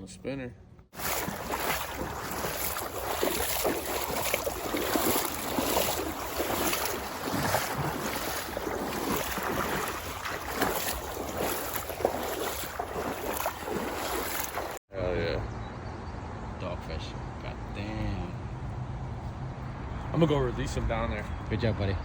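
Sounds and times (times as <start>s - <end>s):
creek water rushing: 1.0s - 14.8s.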